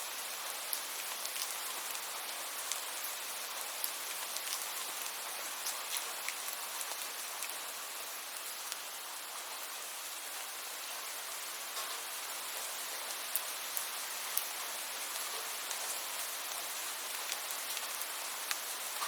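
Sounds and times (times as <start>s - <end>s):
steady rain falling: 0.0s - 19.0s.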